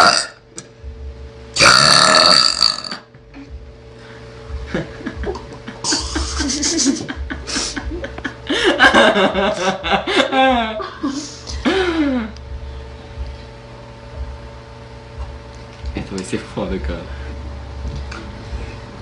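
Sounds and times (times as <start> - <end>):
girl belching: 0.0 - 0.4, 1.6 - 3.1.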